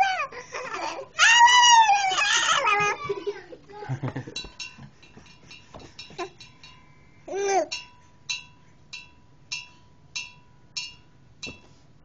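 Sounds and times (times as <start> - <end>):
baby squealing: 0.0 - 3.0
light bell-like ring: 7.7 - 11.7.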